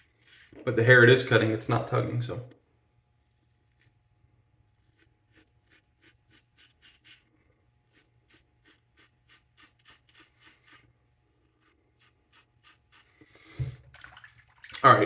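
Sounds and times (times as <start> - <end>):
razor scraping stubble: 4.7 - 7.3, 7.9 - 10.9, 11.5 - 13.2.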